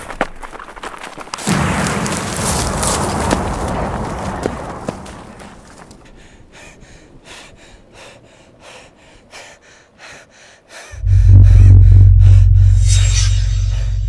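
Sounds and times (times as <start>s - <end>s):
person panting: 6.0s - 12.5s
deep bass tone: 11.0s - 14.0s.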